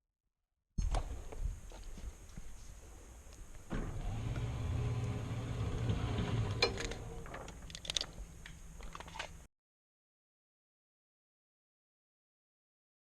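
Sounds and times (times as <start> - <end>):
motor hum: 3.7 - 9.1.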